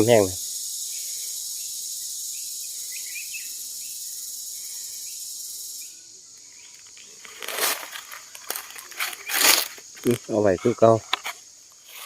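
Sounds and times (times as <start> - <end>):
high-pitched insect chorus: 0.0 - 12.0
small bird chirps: 0.1 - 7.4
loud short rustling: 7.2 - 12.0.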